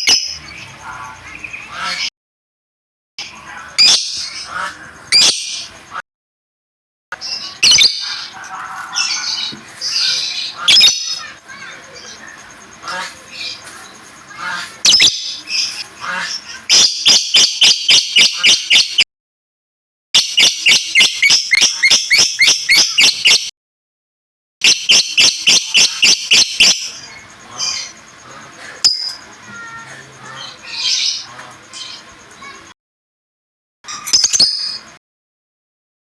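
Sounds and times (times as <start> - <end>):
songbird sharp shrill chirps: 7.2 - 8.4, 14.6 - 15.8, 16.4 - 19.0, 24.6 - 27.2
soft bird twittering: 7.2 - 19.0.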